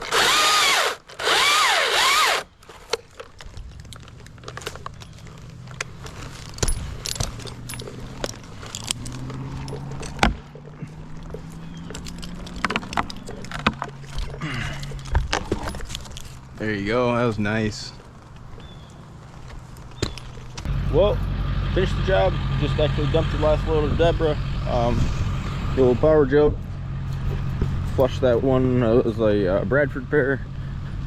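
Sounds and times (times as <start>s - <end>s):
chainsaw revving: 0.0s - 2.5s
knocks and clatter: 3.0s - 14.4s
low engine hum: 3.4s - 31.0s.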